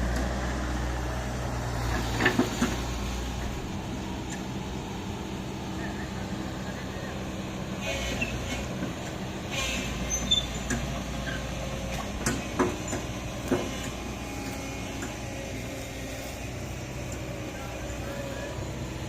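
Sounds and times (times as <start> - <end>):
excavator engine running: 0.0 - 19.0
squeaks: 9.5 - 11.5.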